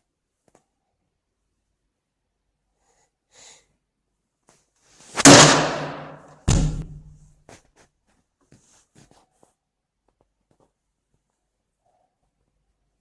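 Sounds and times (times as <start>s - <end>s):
heavy pounding on door: 5.2s - 7.0s.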